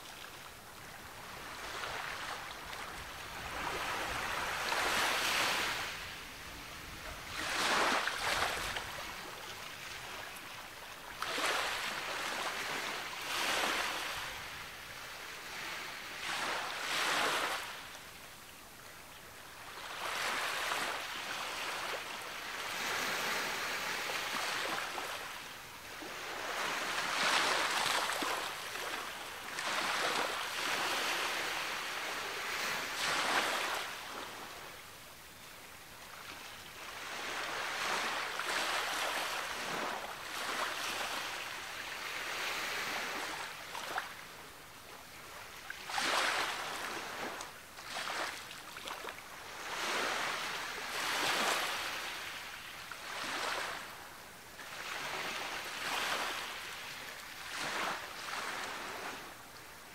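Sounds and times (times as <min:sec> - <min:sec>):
ocean waves breaking: 0:07.3 - 0:09.1.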